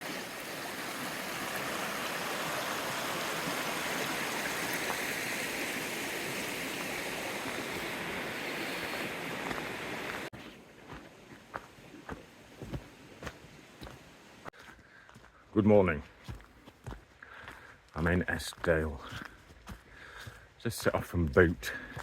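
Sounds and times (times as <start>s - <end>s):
rushing stream water: 0.0s - 14.6s.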